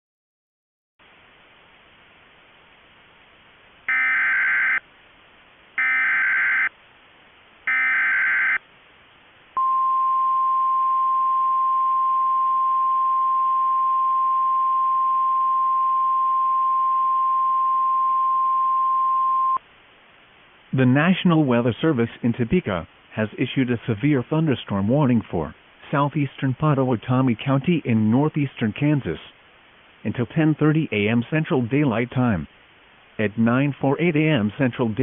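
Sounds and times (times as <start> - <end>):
faint steady hiss: 1.0 - 35.0
steady warning alarm tone: 3.9 - 4.8, 5.8 - 6.7, 7.7 - 8.6.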